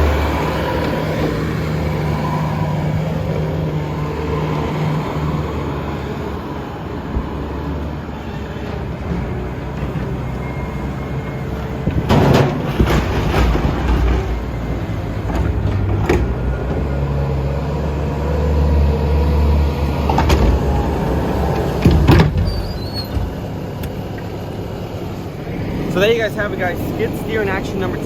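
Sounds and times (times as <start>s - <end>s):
skid steer engine running: 0.0s - 28.0s
knocks and bangs: 11.8s - 16.9s, 19.9s - 23.5s.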